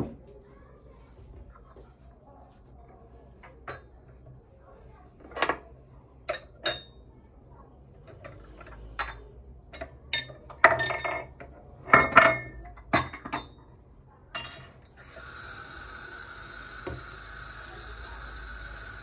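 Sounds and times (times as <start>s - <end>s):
dishes and glassware clinking: 3.4s - 4.0s, 6.3s - 7.0s, 8.0s - 13.7s, 14.3s - 14.9s
kitchen tap running: 15.0s - 19.0s.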